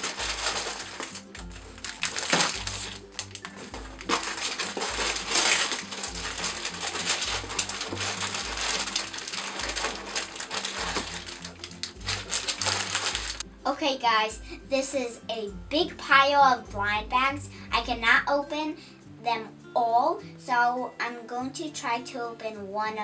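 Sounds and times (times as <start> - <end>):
packaging rustling and crinkling: 0.0 - 13.4.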